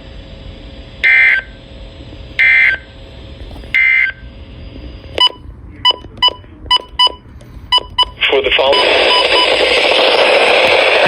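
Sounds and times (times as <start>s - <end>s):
short electronic beep: 5.2s - 9.6s.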